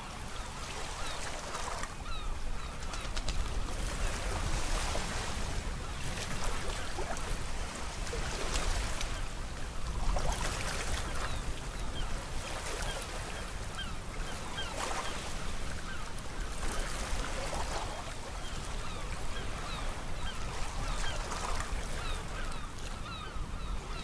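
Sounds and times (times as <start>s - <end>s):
sea waves rushing: 3.5s - 9.3s.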